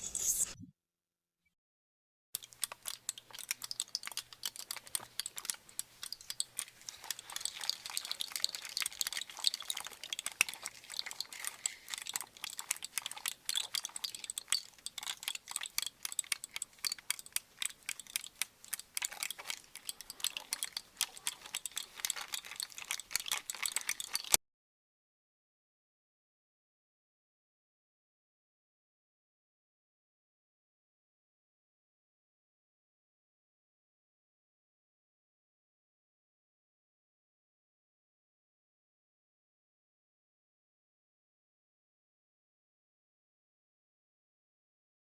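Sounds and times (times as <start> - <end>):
stream of clicks and crackles: 2.4 - 24.4.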